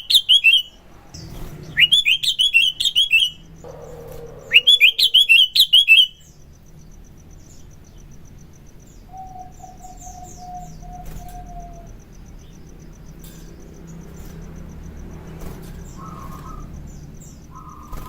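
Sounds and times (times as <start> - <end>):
bird chattering whistled notes: 0.0 - 6.3, 9.1 - 12.0
faint insect ticking: 2.8 - 18.0.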